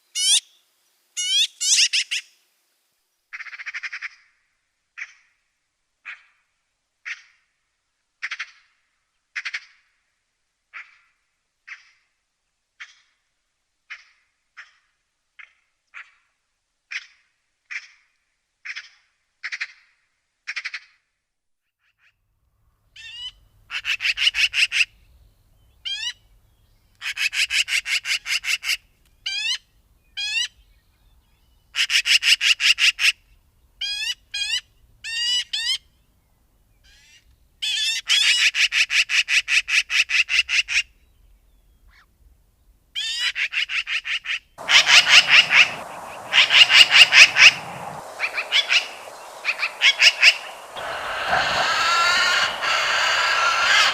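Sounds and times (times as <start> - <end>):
magpie chattering: 44.6 - 53.9.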